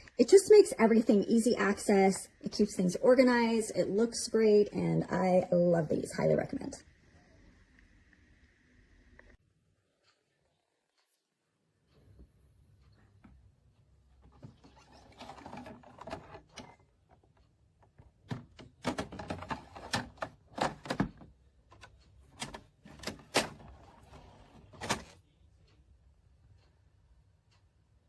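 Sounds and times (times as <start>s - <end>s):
plastic scraping: 14.2s - 17.3s, 18.3s - 25.2s
plastic drawers clacking: 14.3s - 16.8s, 18.0s - 25.2s.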